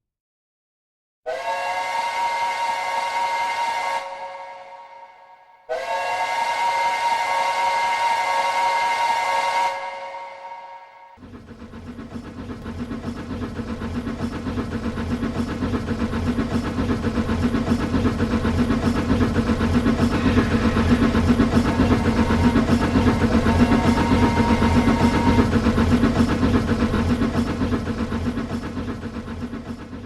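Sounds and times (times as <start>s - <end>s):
train running on rails: 1.3s - 30.0s.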